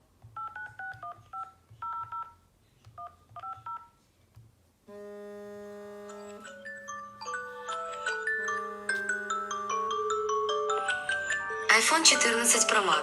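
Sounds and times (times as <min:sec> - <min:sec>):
keypad touch tone beeps: 0:00.4 - 0:02.4
steady buzzy tone: 0:04.9 - 0:12.1.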